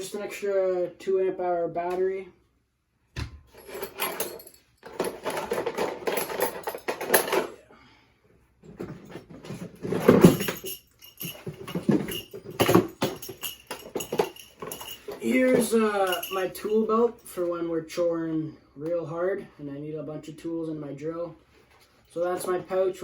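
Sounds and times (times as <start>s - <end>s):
tools clattering in plastic toolbox: 3.5s - 7.6s, 8.6s - 16.7s.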